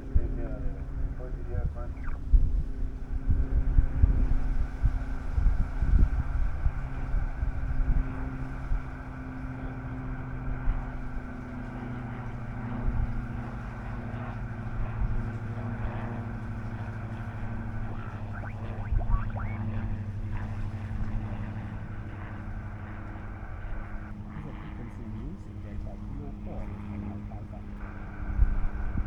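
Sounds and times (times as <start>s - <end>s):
low mechanical drone: 0.0s - 29.0s
wind buffeting microphone: 0.0s - 29.0s.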